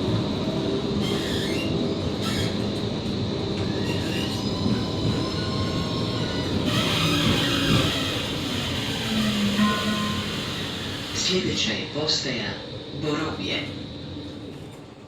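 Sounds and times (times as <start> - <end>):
tram rolling rumble: 0.0 - 15.0
wheel squeals on rails: 1.0 - 2.8, 3.6 - 11.3.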